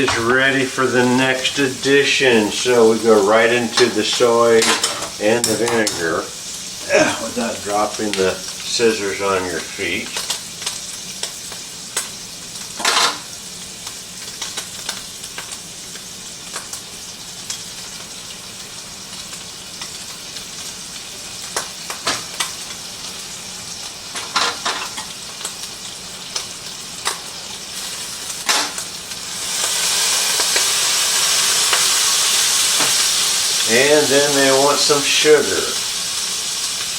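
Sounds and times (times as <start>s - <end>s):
meat sizzling in a frying pan: 0.0s - 36.9s
loud hiss of liquid in hot pan: 8.4s - 36.9s.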